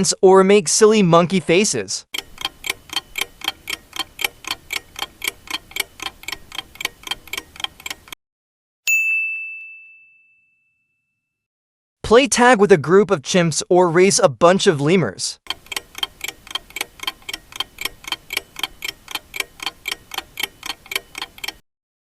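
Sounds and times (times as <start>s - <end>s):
clock ticking: 2.2s - 8.2s, 15.5s - 21.6s
bell ding: 8.9s - 11.4s.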